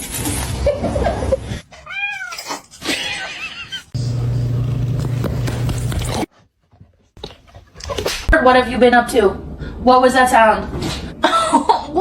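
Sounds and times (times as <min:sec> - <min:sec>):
cat meowing: 0:01.8 - 0:03.4.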